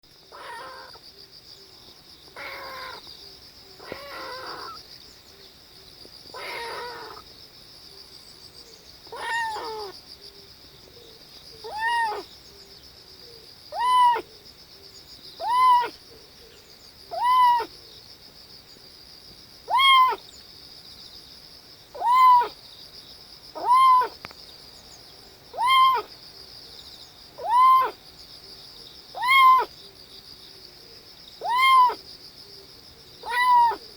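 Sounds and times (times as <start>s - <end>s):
kitten crying: 0.3s - 1.0s, 2.4s - 3.0s, 3.8s - 4.8s, 6.3s - 7.2s, 9.1s - 10.0s, 11.6s - 12.3s, 13.7s - 14.3s, 15.4s - 16.0s, 17.1s - 17.7s, 19.7s - 20.2s, 21.9s - 22.6s, 23.6s - 24.2s, 25.5s - 26.1s, 27.4s - 28.0s, 29.1s - 29.7s, 31.4s - 32.0s, 33.2s - 33.8s.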